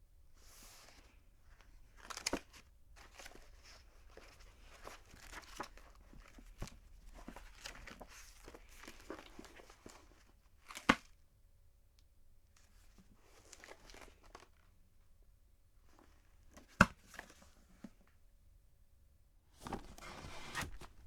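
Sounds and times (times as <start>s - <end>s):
book pages rustling and turning: 0.4s - 11.1s, 13.2s - 14.6s, 19.6s - 21.0s.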